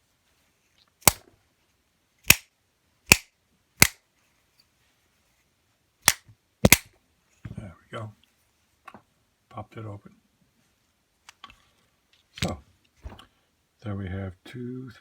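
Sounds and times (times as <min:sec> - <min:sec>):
hammer rapping on padlock shackle: 0:06.1 - 0:06.9.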